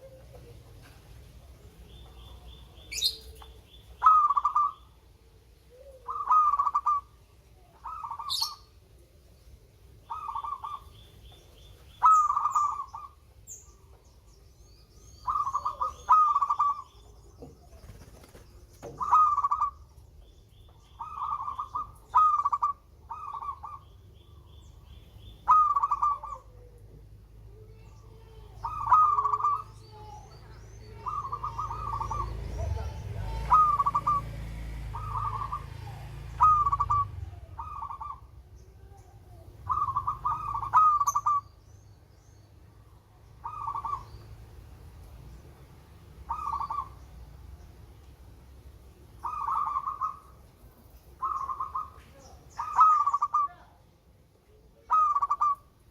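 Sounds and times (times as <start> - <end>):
dove cooing: 0.0 - 5.0, 5.7 - 8.7, 10.0 - 11.0, 12.0 - 13.2, 15.2 - 19.9, 20.9 - 24.0, 25.4 - 41.5, 43.4 - 44.3, 46.2 - 47.1, 49.2 - 53.7, 54.8 - 55.7
small birds chirping: 0.0 - 55.9.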